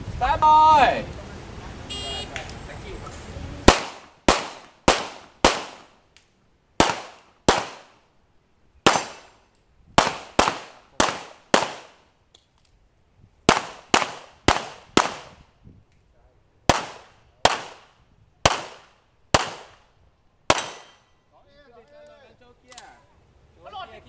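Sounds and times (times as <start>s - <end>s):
pistol shots: 3.7s - 6.0s, 6.8s - 8.0s, 8.8s - 9.4s, 10.0s - 12.0s, 13.5s - 15.4s, 16.7s - 19.8s, 20.5s - 21.1s.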